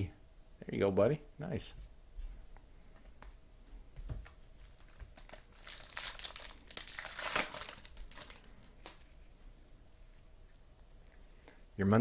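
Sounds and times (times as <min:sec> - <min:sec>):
foil wrapper crinkling: 0:04.6 - 0:09.0.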